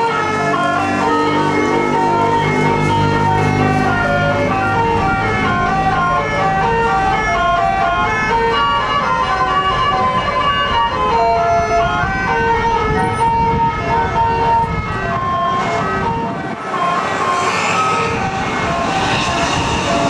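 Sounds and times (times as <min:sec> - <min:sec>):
multi-tone air horn tune: 0:12.3 - 0:20.0
rushing noise: 0:15.2 - 0:20.0.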